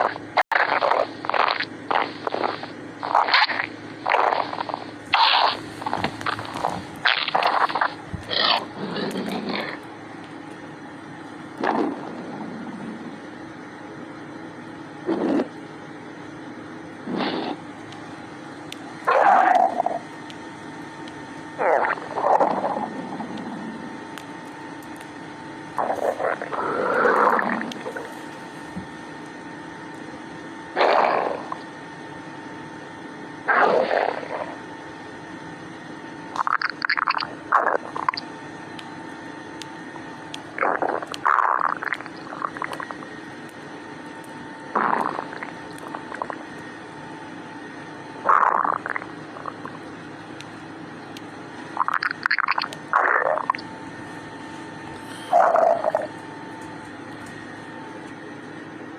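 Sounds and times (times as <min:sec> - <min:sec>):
stomach growling: 0:00.0 - 0:09.9, 0:11.6 - 0:13.2, 0:15.0 - 0:15.6, 0:17.0 - 0:17.6, 0:19.1 - 0:20.1, 0:21.5 - 0:24.1, 0:24.9 - 0:29.0, 0:30.7 - 0:31.8, 0:33.5 - 0:34.7, 0:36.3 - 0:38.3, 0:40.4 - 0:43.2, 0:44.7 - 0:46.5, 0:48.2 - 0:49.9, 0:51.6 - 0:53.7, 0:54.9 - 0:56.2
faint steady hum: 0:00.0 - 0:58.9.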